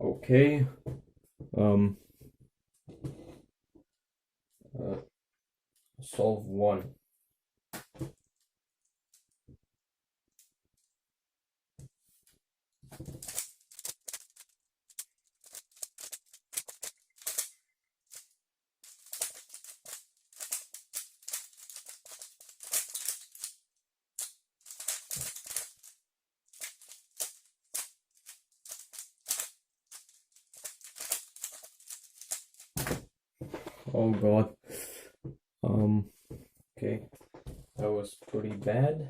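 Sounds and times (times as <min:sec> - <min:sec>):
plastic puzzle cube clicking: 0:18.9 - 0:23.6, 0:24.2 - 0:25.9, 0:26.6 - 0:32.7.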